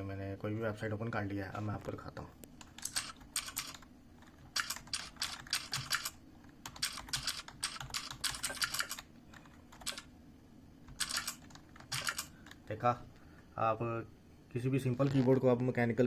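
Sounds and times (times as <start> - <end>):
keyboard typing clicks: 2.6 - 10.1, 10.9 - 12.8.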